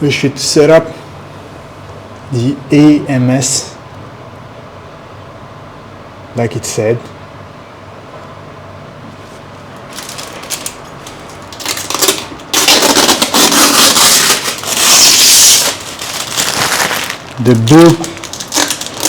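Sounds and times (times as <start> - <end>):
packaging rustling and crackling: 9.8 - 19.0.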